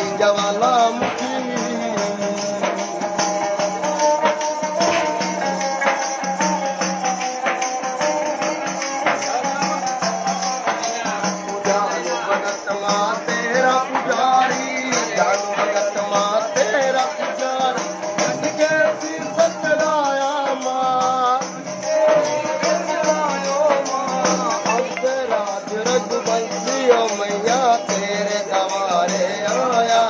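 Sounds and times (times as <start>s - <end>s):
devotional song: 0.0s - 30.0s
shaken percussion: 0.0s - 30.0s
wavering melody: 23.6s - 25.4s.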